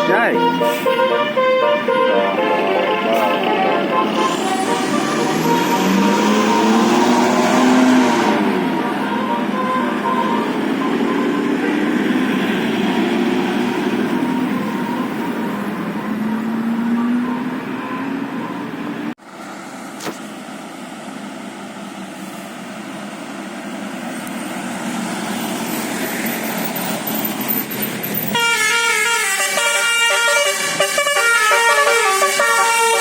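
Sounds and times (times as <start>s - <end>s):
bus musical air horn: 0.0s - 12.7s, 28.3s - 33.0s
vehicle noise: 0.0s - 33.0s.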